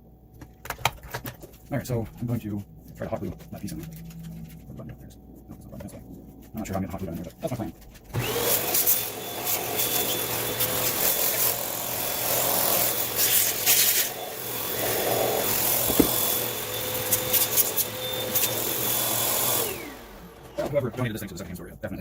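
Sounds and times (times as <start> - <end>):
rubbing and scraping: 0.8 - 8.3
small electric motor running: 8.2 - 20.6.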